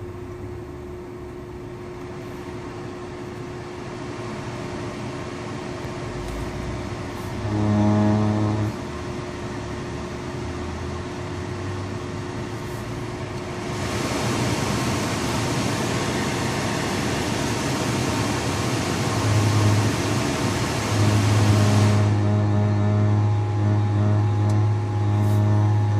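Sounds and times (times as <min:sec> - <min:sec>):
air conditioning air rush: 0:00.0 - 0:25.9
low droning hum: 0:05.0 - 0:25.9.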